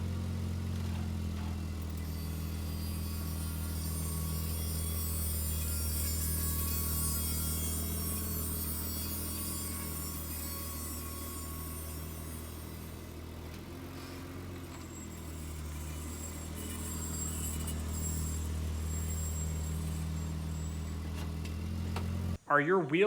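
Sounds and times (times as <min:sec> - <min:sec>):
brakes scraping and squealing: 0:00.0 - 0:22.4.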